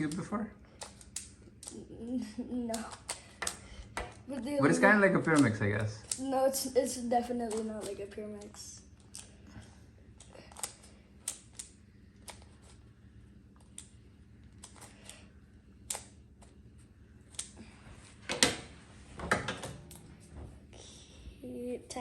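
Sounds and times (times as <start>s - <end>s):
speed cube clicking: 7.2s - 8.6s.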